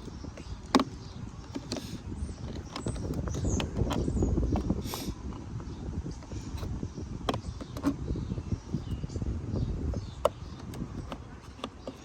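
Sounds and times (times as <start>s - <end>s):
plastic trim clicks and knocks: 0.0s - 5.0s, 6.5s - 8.0s.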